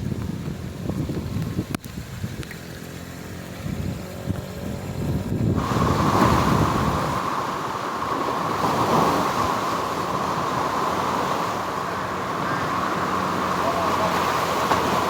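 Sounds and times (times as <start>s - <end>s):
wind noise on microphone: 0.0s - 2.6s, 3.4s - 15.0s
motorcycle engine rumble: 0.0s - 8.3s.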